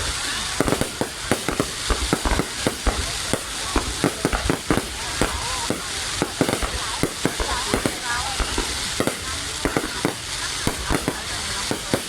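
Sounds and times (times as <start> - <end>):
crackling hiss: 0.0 - 12.0
fireworks bangs and pops: 0.0 - 12.0.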